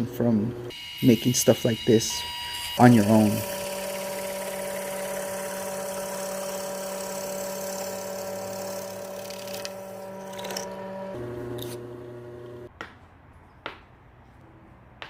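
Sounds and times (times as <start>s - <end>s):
electric power tool running: 0.5s - 12.7s.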